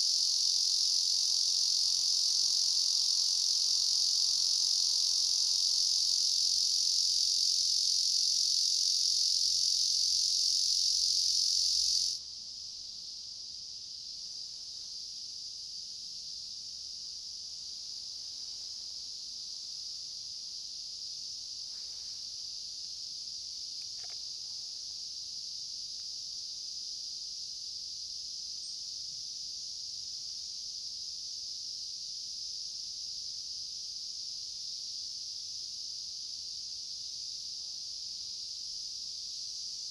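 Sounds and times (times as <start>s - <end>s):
high-pitched insect drone: 0.0s - 12.2s.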